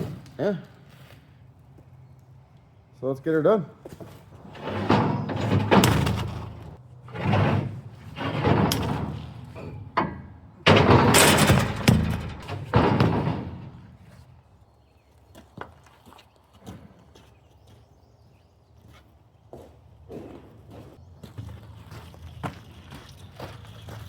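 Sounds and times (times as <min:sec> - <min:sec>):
sudden clunk: 0:04.5 - 0:14.2.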